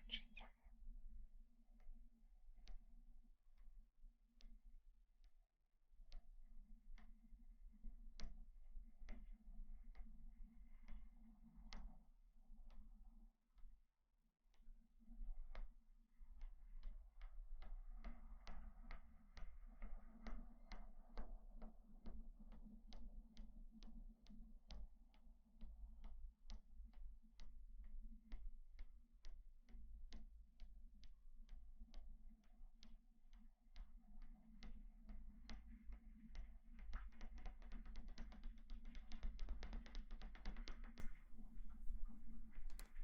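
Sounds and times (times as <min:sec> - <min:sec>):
light sharp clicks: 0:39.0 - 0:43.0.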